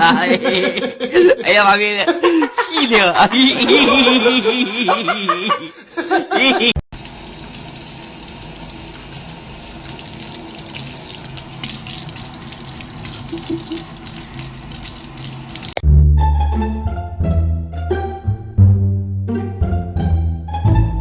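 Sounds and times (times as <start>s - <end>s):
tap water running: 6.9s - 15.8s
music: 15.8s - 21.0s.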